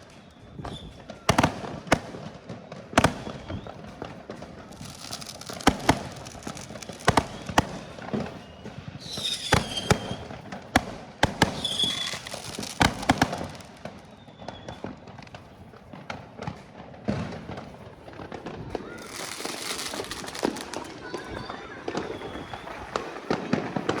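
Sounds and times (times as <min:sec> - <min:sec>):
firework falling whistle: 0:00.0 - 0:01.3, 0:03.0 - 0:10.5, 0:11.2 - 0:15.1, 0:18.8 - 0:24.0
fireworks bangs: 0:00.0 - 0:24.0.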